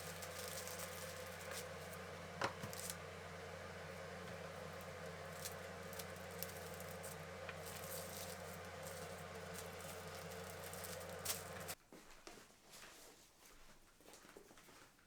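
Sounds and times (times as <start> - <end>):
motor humming: 0.0 - 11.8.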